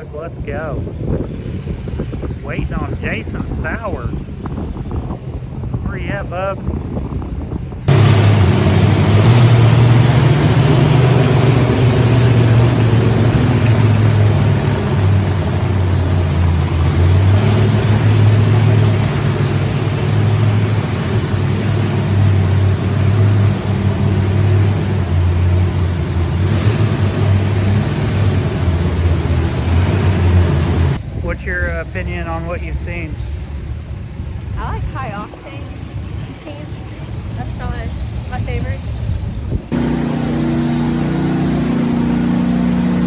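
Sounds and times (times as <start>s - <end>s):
car engine revving: 7.9s - 31.0s, 39.7s - 43.0s.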